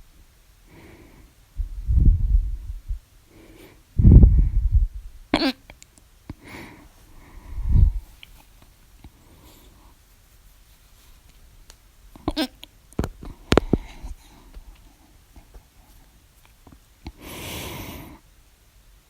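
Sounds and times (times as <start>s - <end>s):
woman hiccuping: 5.3s - 5.6s, 12.2s - 12.6s.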